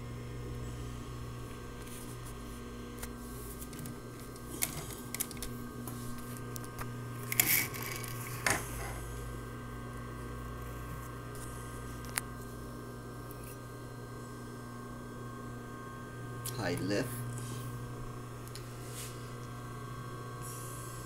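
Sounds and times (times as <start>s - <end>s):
sewing machine motor hum: 0.0s - 13.5s.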